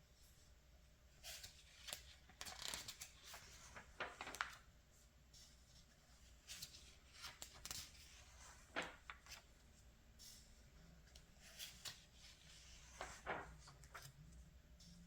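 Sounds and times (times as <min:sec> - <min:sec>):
magazine pages turning: 0:01.3 - 0:04.7, 0:06.5 - 0:09.5, 0:11.6 - 0:14.2.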